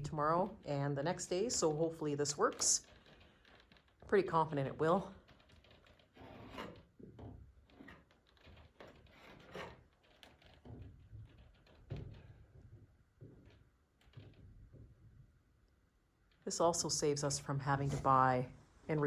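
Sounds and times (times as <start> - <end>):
brush scraping on roof: 5.5 - 7.0, 7.6 - 11.4.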